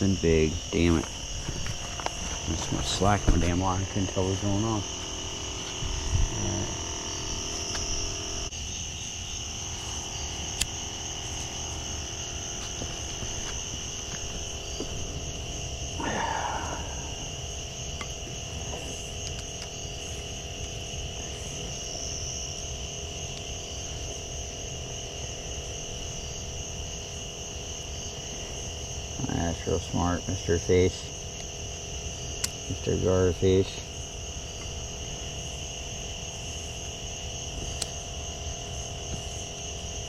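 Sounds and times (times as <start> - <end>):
high-pitched insect chorus: 0.0 - 40.0
low background hum: 0.0 - 40.0
sharp click: 10.5 - 10.8, 32.4 - 32.6.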